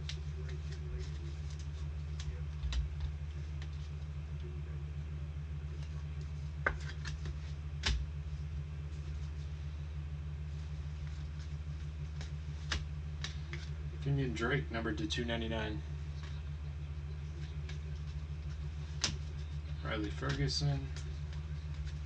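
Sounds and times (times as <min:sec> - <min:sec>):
trading cards clicking and tapping: 0:00.0 - 0:03.8, 0:05.8 - 0:08.1, 0:12.1 - 0:13.8, 0:17.3 - 0:22.0
steady low hum: 0:00.0 - 0:22.0.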